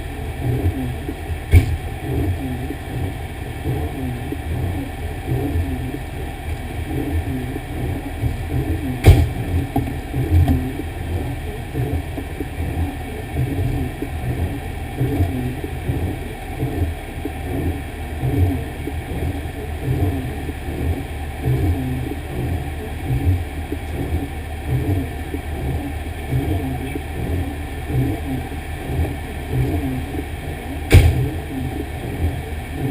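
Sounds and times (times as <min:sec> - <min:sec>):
fire engine rumbling: 0:00.0 - 0:32.9
sharp knock: 0:01.5 - 0:01.8, 0:09.0 - 0:09.3, 0:30.9 - 0:31.2.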